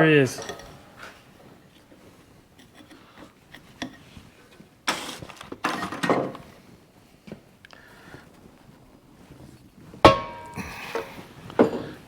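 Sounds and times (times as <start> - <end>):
metal scraping clatters: 0.2 - 1.3.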